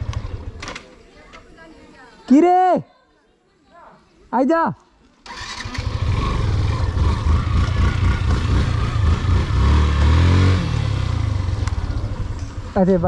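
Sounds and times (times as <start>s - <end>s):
motorcycle engine rumbling: 0.0s - 0.9s, 5.3s - 13.0s.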